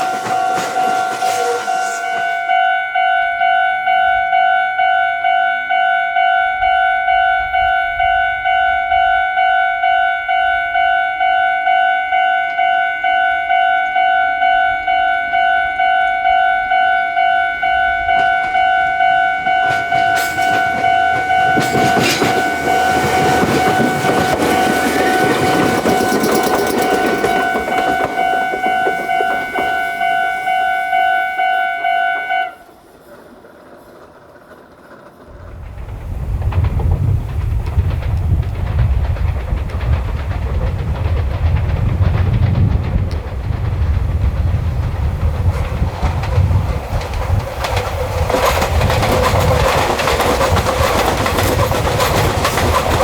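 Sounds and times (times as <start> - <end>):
railroad crossing bell ringing: 0.0 - 33.2
train passing: 0.0 - 53.0.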